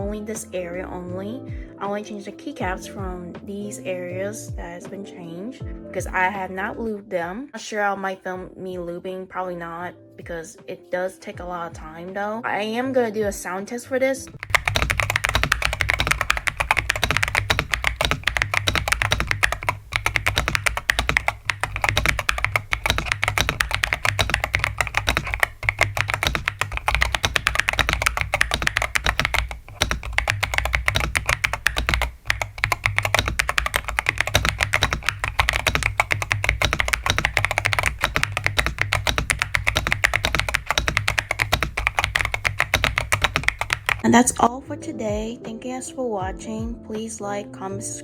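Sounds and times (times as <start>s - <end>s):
typing on mechanical keyboard: 14.3s - 44.1s.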